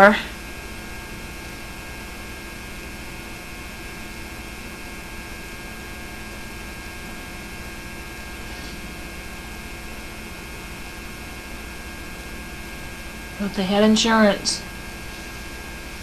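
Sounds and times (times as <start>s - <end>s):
electrical mains hum: 0.0s - 16.0s
tape hiss: 0.0s - 16.0s.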